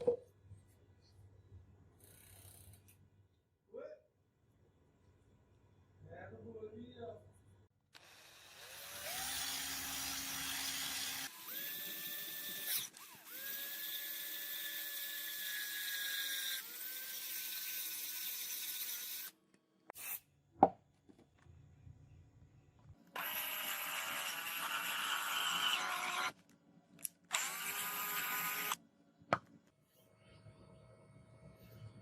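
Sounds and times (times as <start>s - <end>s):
small power tool motor running: 8.0s - 19.3s, 23.2s - 26.3s, 27.3s - 28.8s.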